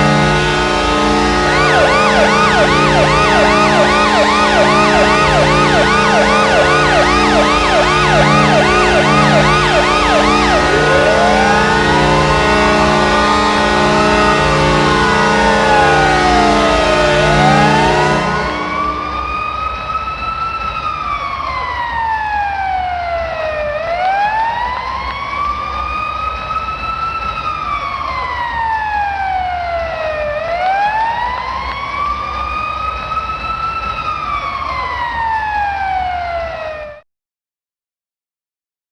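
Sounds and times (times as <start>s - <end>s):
goal horn siren wailing: 0.0s - 19.5s.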